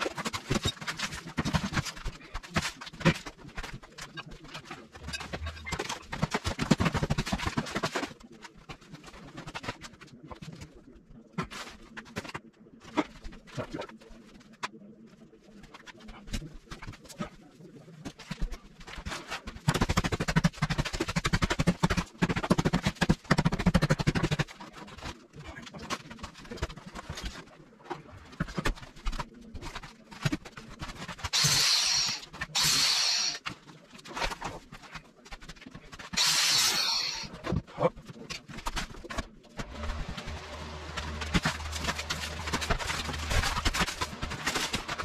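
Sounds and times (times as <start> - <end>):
breaking material and debris clattering: 0.0 - 10.0, 28.2 - 45.0.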